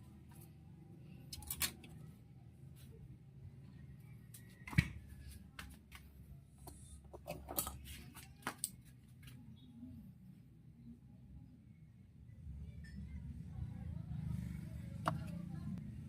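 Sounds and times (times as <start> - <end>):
metal parts clicking: 1.2 - 2.1, 7.2 - 7.9.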